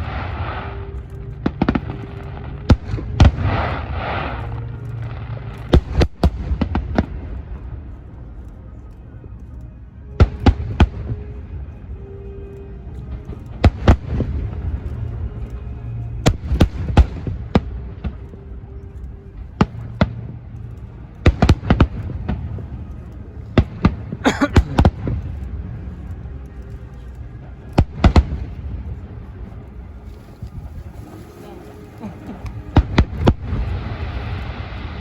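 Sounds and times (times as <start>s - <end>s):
fireworks bursting: 0.0s - 7.9s, 21.2s - 25.8s, 27.8s - 35.0s
low rumble: 0.0s - 35.0s.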